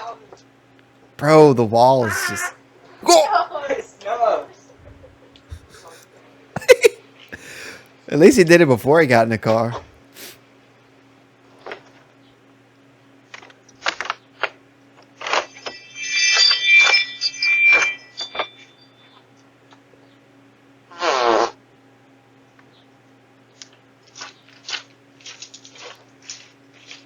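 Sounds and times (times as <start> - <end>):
low electrical hum: 0.0 - 27.0
short pitched fart: 20.9 - 21.6.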